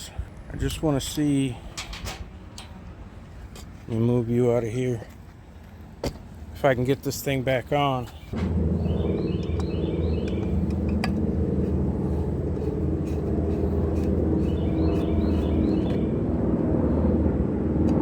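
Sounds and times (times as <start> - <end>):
aircraft engine drone: 8.3 - 18.0.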